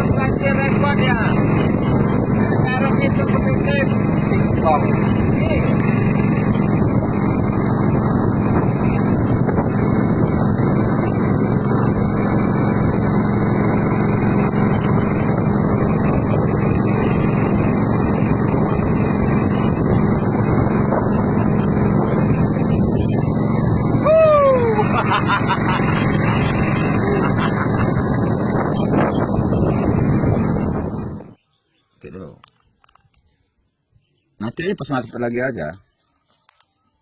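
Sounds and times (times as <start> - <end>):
wind rush: 0.0 - 31.4
small boat engine droning: 0.0 - 32.0.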